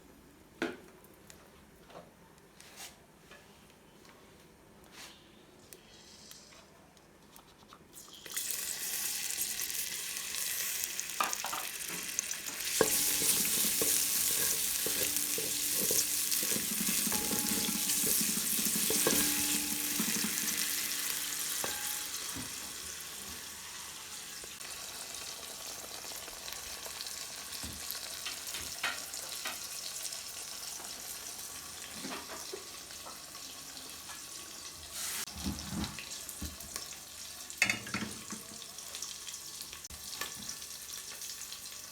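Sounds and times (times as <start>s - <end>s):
food sizzling in hot oil: 8.1s - 41.9s
utensil knocking and scraping pan: 12.6s - 22.8s.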